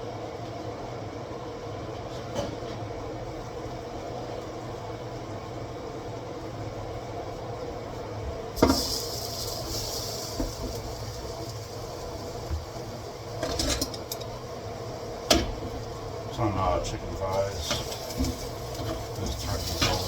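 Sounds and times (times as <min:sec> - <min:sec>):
steady low hum: 0:00.0 - 0:20.0
hiss: 0:08.6 - 0:13.5, 0:17.3 - 0:20.0.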